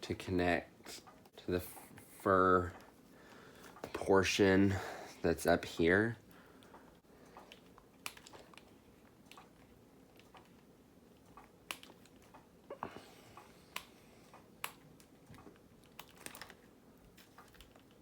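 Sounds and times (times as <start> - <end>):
plastic toy parts clicking: 15.4 - 16.6.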